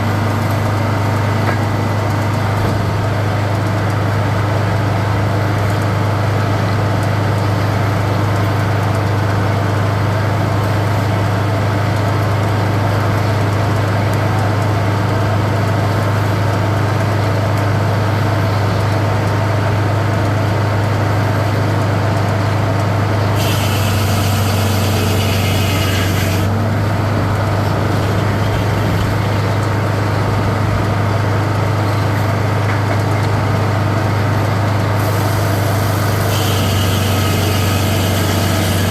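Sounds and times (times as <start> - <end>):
sawmill engine droning: 0.0 - 9.3, 22.5 - 38.9.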